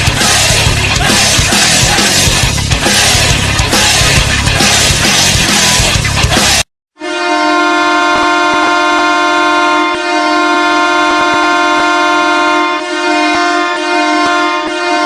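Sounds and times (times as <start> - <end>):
rock music: 0.0 - 6.7
goal horn blast: 7.0 - 15.0.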